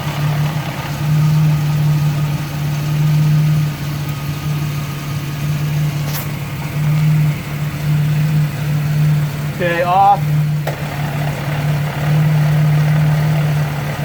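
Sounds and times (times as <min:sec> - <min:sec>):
truck engine idling: 0:00.0 - 0:14.0.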